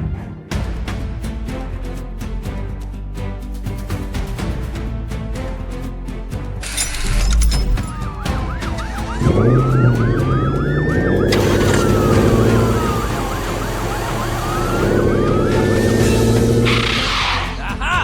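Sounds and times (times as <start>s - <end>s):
sirens wailing: 7.5s - 17.6s
yelping siren: 7.8s - 17.6s
low vehicle engine hum: 8.4s - 17.1s.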